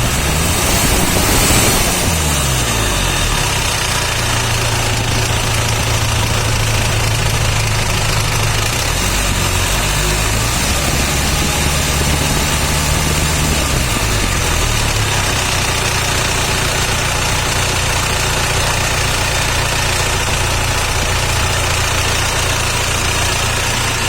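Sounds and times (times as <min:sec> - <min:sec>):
diesel engine idling: 0:00.0 - 0:24.0.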